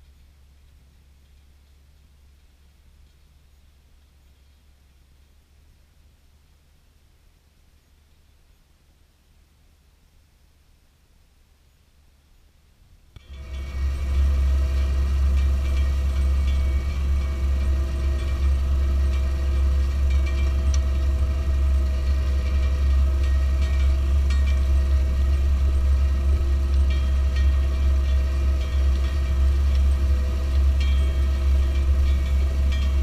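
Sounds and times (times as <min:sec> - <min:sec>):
tractor diesel engine running: 0:13.2 - 0:33.0.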